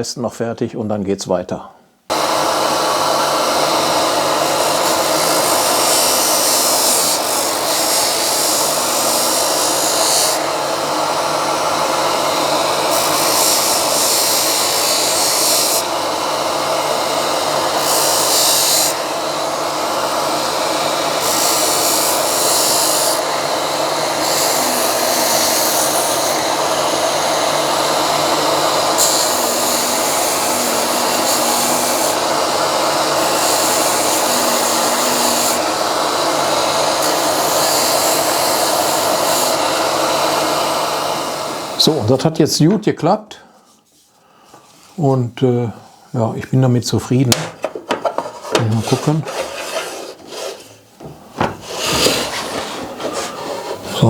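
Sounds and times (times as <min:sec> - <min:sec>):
electric drill motor hum: 0:02.1 - 0:41.9
drill bit cutting into wood: 0:02.1 - 0:42.0.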